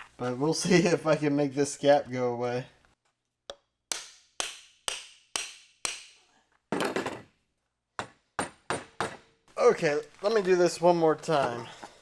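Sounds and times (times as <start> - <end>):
hammer striking wood: 3.5 - 6.2, 8.0 - 9.4.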